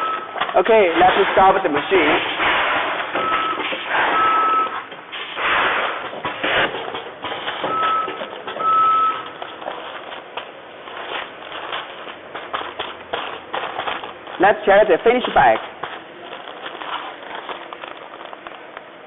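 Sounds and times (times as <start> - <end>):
packing machine clacking: 0.0 - 19.0
short high beeps: 7.7 - 9.3.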